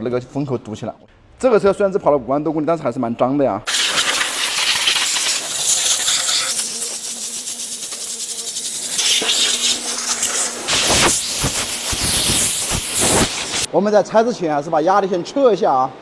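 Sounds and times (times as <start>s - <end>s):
pressure washer jet hissing: 3.7s - 13.7s.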